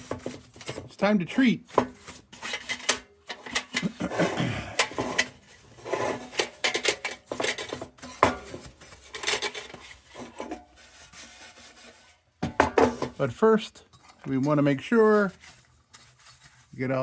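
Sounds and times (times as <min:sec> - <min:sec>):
metal scraping and rubbing: 0:01.7 - 0:17.0
metal parts clinking: 0:02.4 - 0:04.0, 0:06.1 - 0:08.2.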